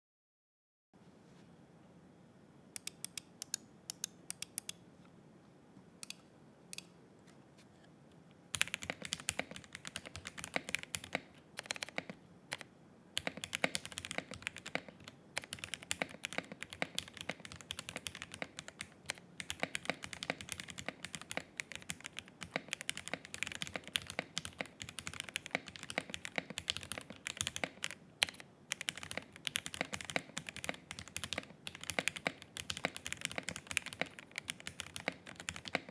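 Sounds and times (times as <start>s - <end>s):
typing on mechanical keyboard: 8.6s - 35.9s.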